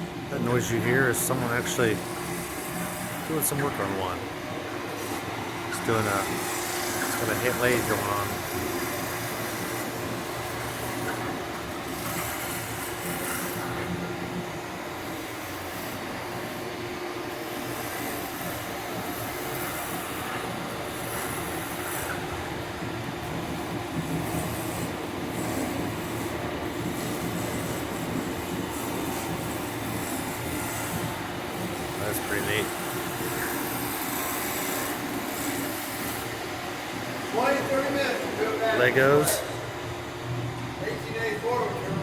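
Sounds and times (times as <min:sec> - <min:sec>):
wood lathe humming: 0:00.0 - 0:16.2, 0:23.9 - 0:39.7.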